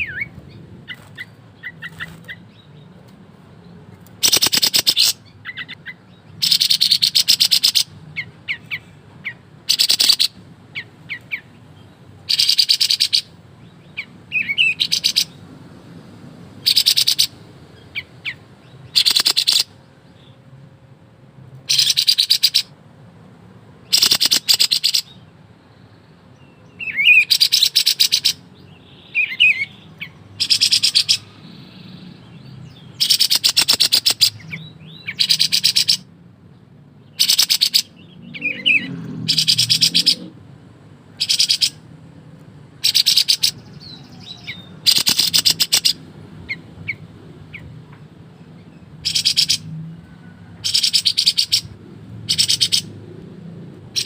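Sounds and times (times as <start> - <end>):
bird rattling song bursts: 0.0 - 2.6, 3.9 - 11.5, 12.3 - 13.3, 14.0 - 15.4, 16.6 - 19.8, 21.7 - 22.7, 23.8 - 25.2, 26.8 - 36.1, 37.0 - 40.4, 41.1 - 41.8, 42.8 - 47.7, 49.0 - 49.7, 50.6 - 53.1.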